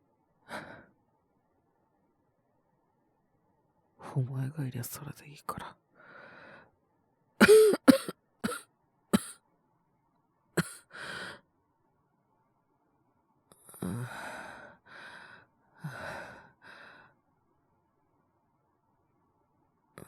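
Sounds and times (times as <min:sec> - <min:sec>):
heavy breathy sighs: 0:00.5 - 0:00.9, 0:13.7 - 0:17.1
man coughing: 0:07.4 - 0:08.6, 0:10.6 - 0:10.8.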